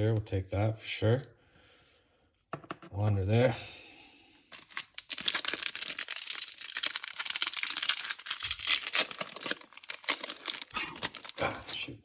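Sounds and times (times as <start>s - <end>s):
foil wrapper tearing and crinkling: 4.7s - 11.8s.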